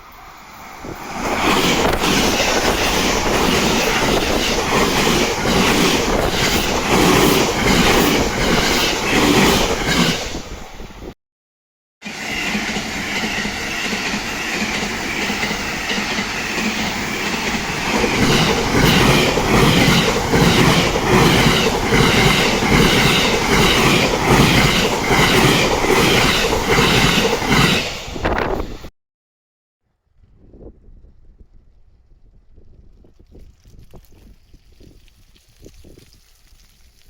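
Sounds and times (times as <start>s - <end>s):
train wheels clattering over rails: 0.9s - 10.6s, 12.1s - 28.9s.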